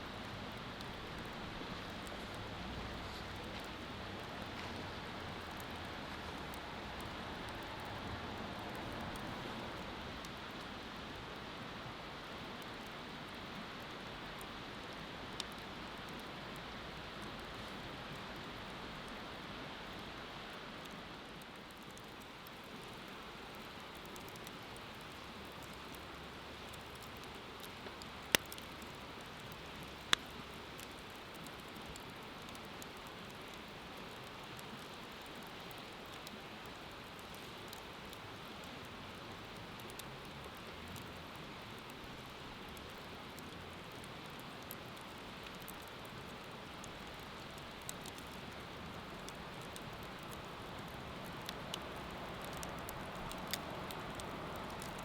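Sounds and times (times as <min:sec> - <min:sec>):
wood fire crackling: 0:00.0 - 0:55.0
fire popping: 0:00.2 - 0:11.4, 0:20.8 - 0:55.0.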